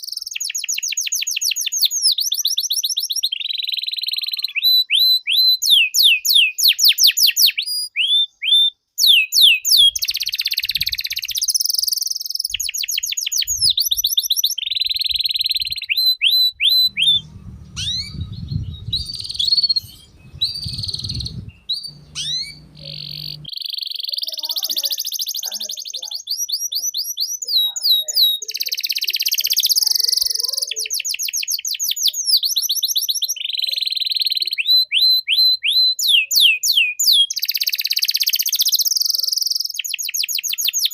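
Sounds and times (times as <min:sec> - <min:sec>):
canary singing trills: 0:00.0 - 0:40.9
low rumble: 0:16.8 - 0:23.5.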